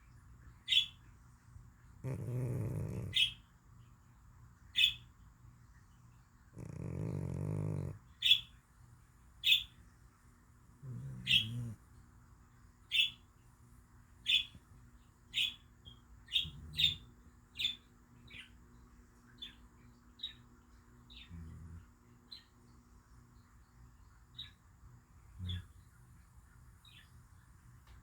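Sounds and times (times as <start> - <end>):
cat snoring: 2.0 - 3.3, 6.6 - 8.0, 10.8 - 11.8.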